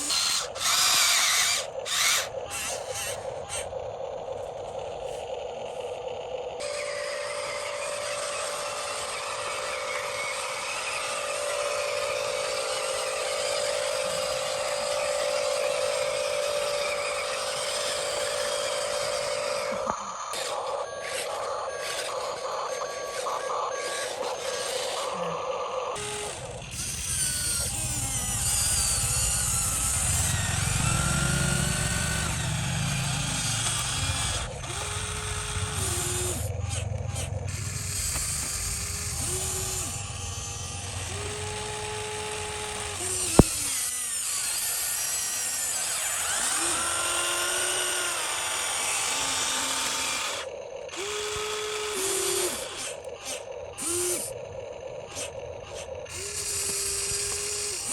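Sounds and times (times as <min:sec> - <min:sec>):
small electric motors whining: 0:00.0 - 0:57.9
sharp click: 0:43.2 - 0:43.8.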